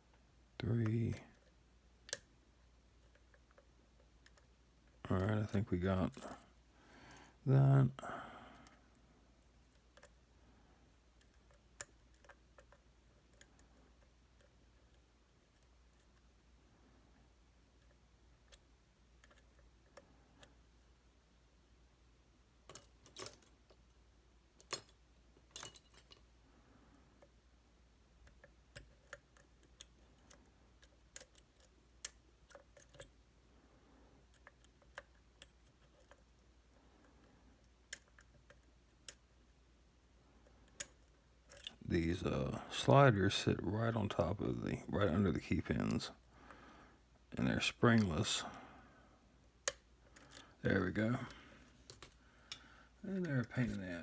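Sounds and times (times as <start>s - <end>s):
lock-picking tools clicking: 24.6s - 26.3s, 28.2s - 33.2s, 40.6s - 41.8s, 49.6s - 50.6s.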